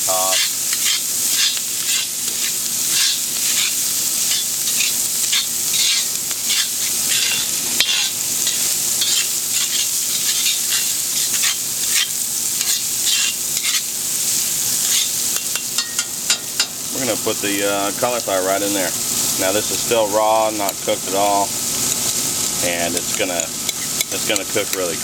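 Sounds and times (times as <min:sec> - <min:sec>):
food sizzling in a wok: 0:00.0 - 0:25.0
spatula scraping and knocking: 0:00.4 - 0:13.9.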